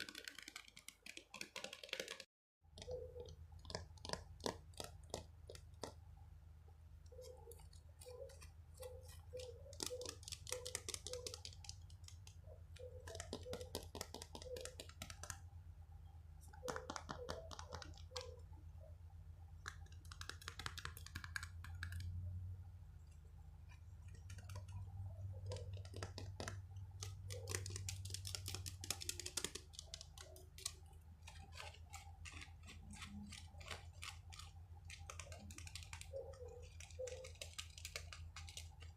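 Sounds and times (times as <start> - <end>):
rapid tapping and clicking: 0.0 - 6.0, 9.3 - 15.4, 19.6 - 22.1, 24.1 - 38.9
low steady hum: 14.9 - 20.2, 21.0 - 38.9
scratchy rustling: 27.0 - 38.9.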